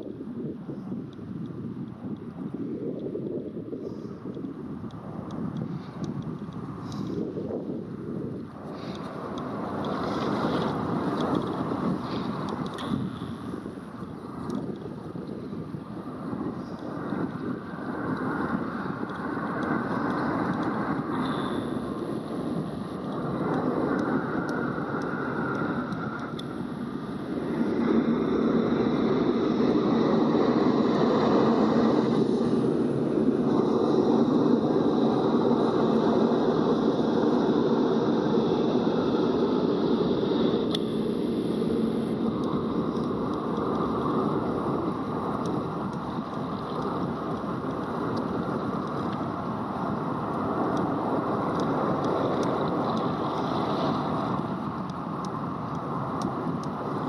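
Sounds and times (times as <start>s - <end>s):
water against a hull: 0.8s - 37.2s, 40.3s - 57.0s
faint ticks: 1.1s - 7.2s, 8.4s - 15.6s, 16.4s - 28.0s, 40.6s - 57.0s.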